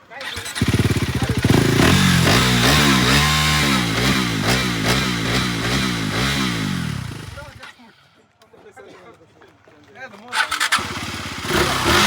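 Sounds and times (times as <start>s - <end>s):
motorcycle engine revving: 0.2s - 7.8s, 10.4s - 12.0s.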